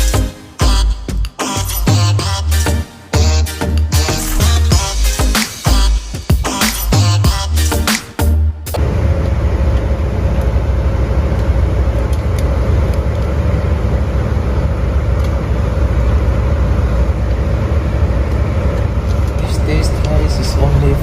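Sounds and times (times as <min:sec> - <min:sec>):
ship machinery low drone: 0:08.7 - 0:21.0.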